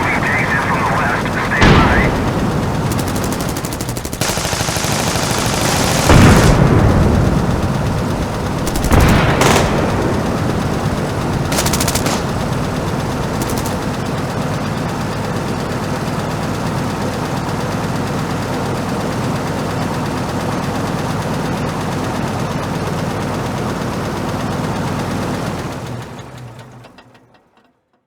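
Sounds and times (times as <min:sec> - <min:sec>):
heavy blasts: 0:00.0 - 0:14.3
machine-gun fire: 0:00.0 - 0:14.4
low rumble: 0:01.2 - 0:14.1.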